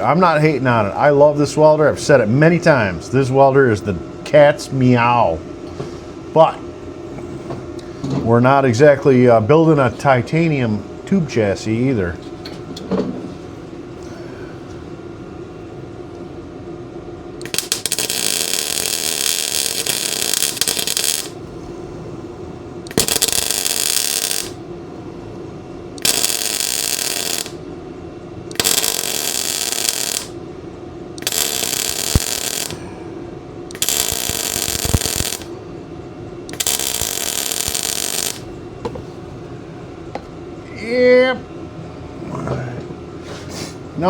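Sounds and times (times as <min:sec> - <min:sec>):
welder arc crackling: 0:17.4 - 0:21.4, 0:22.9 - 0:24.6, 0:26.0 - 0:27.6, 0:28.5 - 0:30.4, 0:31.2 - 0:32.8, 0:33.7 - 0:35.6, 0:36.5 - 0:38.5.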